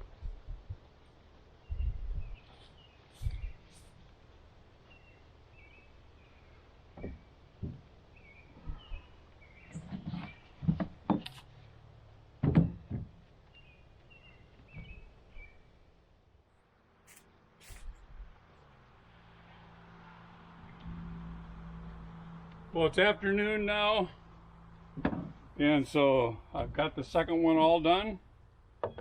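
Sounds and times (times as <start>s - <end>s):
birds chirping: 1.6s - 12.4s, 13.2s - 17.9s, 20.1s - 29.0s
knocks and thumps: 6.9s - 8.0s, 9.7s - 11.4s, 12.4s - 13.3s, 24.9s - 25.5s.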